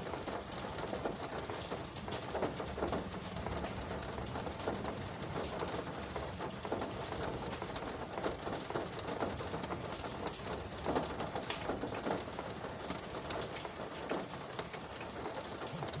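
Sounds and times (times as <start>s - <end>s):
rain on car roof and glass: 0.0s - 16.0s.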